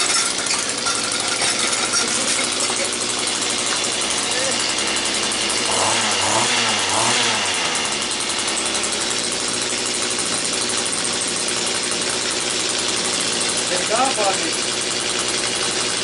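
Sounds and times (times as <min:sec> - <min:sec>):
small gasoline engine revving: 0:00.0 - 0:16.0.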